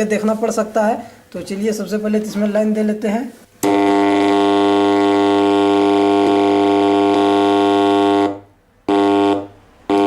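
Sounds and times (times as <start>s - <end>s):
loud buzzy mains hum: 3.6s - 10.0s.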